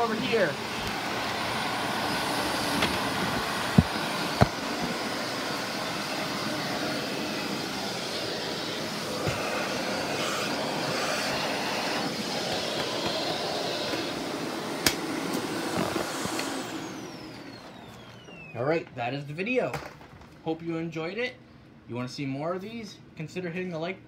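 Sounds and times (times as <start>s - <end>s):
vacuum cleaner running: 0.0s - 19.0s.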